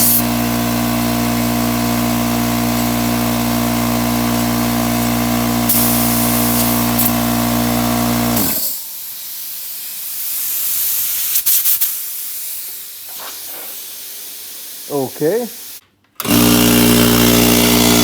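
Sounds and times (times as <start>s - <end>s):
air compressor running: 0.0s - 18.0s
short sharp air puffs: 8.5s - 15.8s
air venting hiss: 8.6s - 15.8s.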